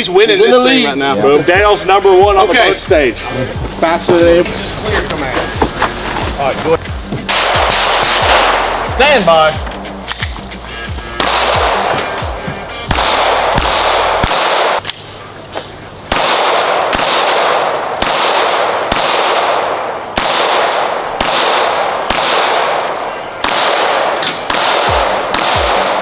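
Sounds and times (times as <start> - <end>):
pistol shots with echo: 7.3 - 10.4, 11.2 - 15.1, 16.1 - 26.0.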